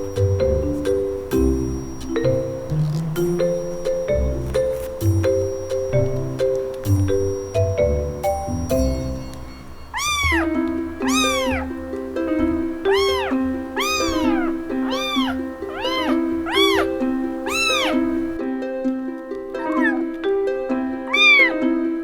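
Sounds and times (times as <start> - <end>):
background music: 0.0 - 22.0
kitten meowing: 2.6 - 3.8, 9.8 - 11.8, 12.9 - 18.3, 19.6 - 20.2, 21.0 - 21.6.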